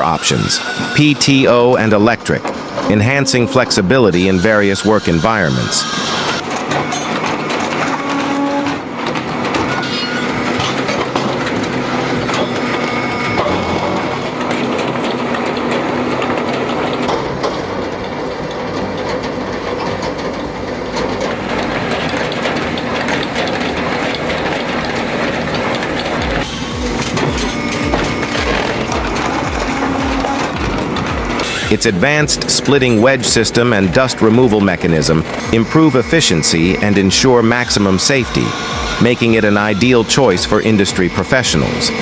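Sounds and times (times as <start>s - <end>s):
firewood processor clattering: 0.0s - 42.0s.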